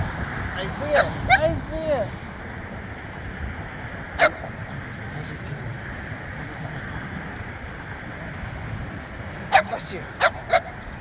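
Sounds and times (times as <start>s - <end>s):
small dog yipping: 4.2s - 4.4s.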